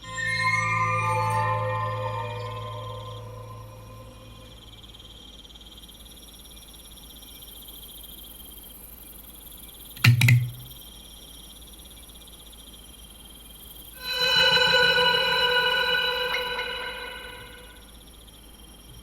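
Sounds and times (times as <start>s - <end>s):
high-pitched pulsing ambience: 0.0s - 5.2s, 14.0s - 17.8s.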